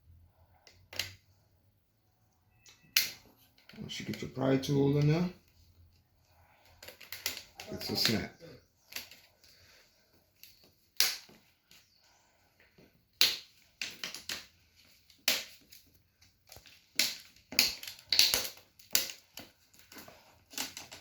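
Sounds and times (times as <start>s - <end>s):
plastic clips snapping loose: 10.4s - 11.8s, 16.5s - 21.0s.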